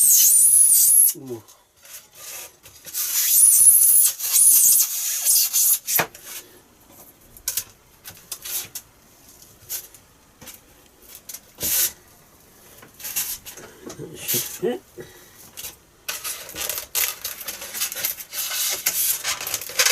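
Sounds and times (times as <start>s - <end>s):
foam squeaks: 0.0s - 1.3s, 2.2s - 6.0s
strip scraping through foam: 0.0s - 6.5s, 8.3s - 8.8s, 11.6s - 12.0s, 16.1s - 19.9s.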